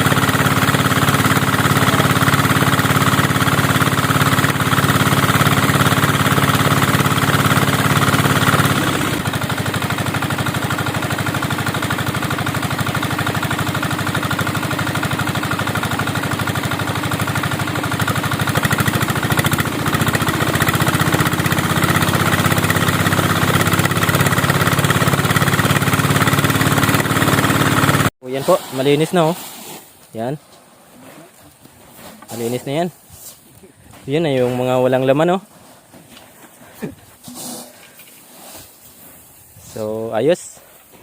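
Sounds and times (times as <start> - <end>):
small engine running threshing machine: 0.0 - 29.0.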